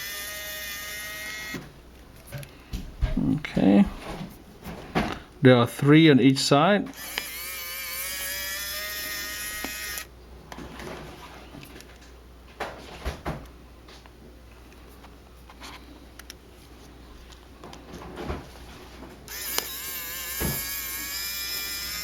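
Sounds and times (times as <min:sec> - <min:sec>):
electric screwdriver whine: 0:00.0 - 0:01.6, 0:06.9 - 0:10.1, 0:19.3 - 0:22.0.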